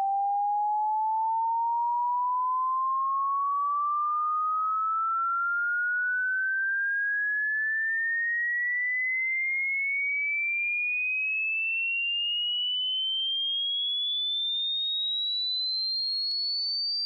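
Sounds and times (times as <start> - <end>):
rising sine tone: 0.0 - 10.0.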